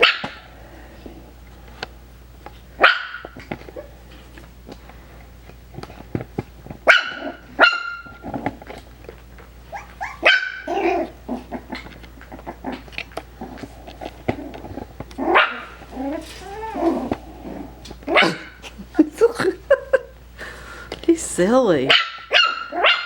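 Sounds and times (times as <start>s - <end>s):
puppy barking: 0.0s - 0.4s, 2.8s - 3.9s, 6.8s - 8.2s, 9.7s - 11.2s, 15.2s - 15.8s, 18.1s - 18.6s, 21.9s - 23.0s
soft puppy yips: 9.7s - 10.6s.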